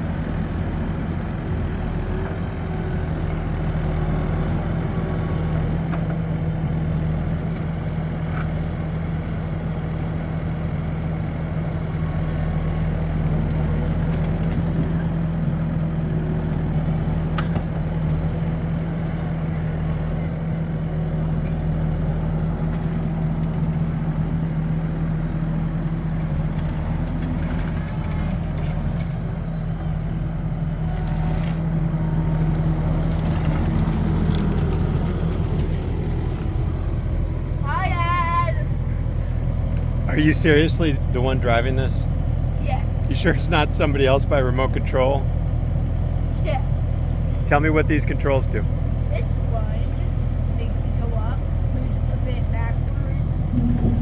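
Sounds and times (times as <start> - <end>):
loader engine running: 0.0 - 54.0.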